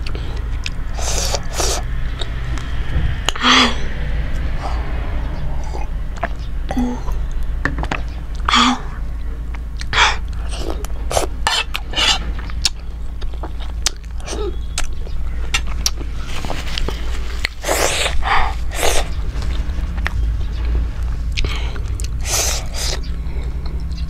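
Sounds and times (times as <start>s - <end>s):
steady low hum: 0.0s - 24.0s
sharp hissing intakes of breath: 0.9s - 1.8s
person chewing food: 9.2s - 20.2s, 21.2s - 24.0s.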